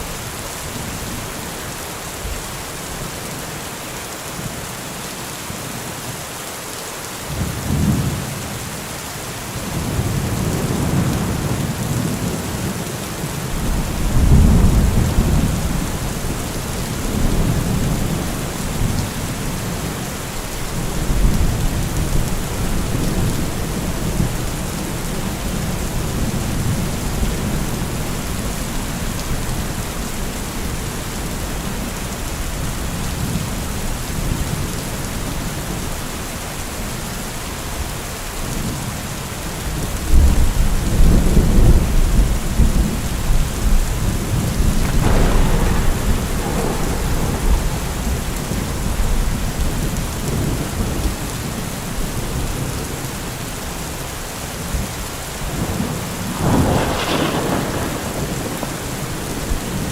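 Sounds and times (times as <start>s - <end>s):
heavy rain hissing: 0.0s - 59.9s
rolling thunder: 9.7s - 20.0s, 40.1s - 52.6s, 55.5s - 59.9s.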